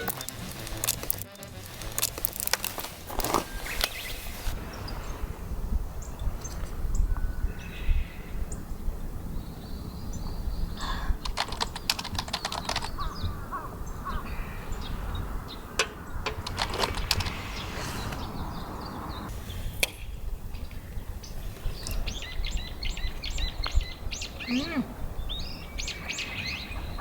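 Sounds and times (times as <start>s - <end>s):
sharp clicks and taps: 0.0s - 3.0s
low wind rumble: 0.0s - 27.0s
crow cawing: 13.0s - 14.6s.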